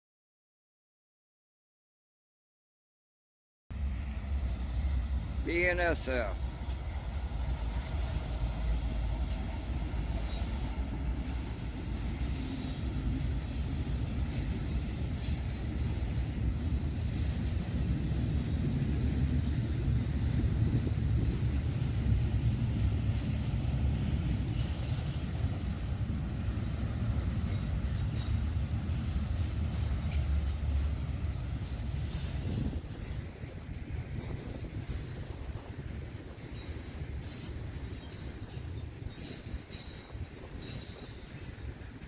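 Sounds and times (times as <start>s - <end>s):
train wheels rumbling on rail: 3.7s - 42.0s
high wheel squeals: 7.4s - 8.8s, 10.2s - 11.3s, 31.6s - 33.1s, 36.2s - 41.8s.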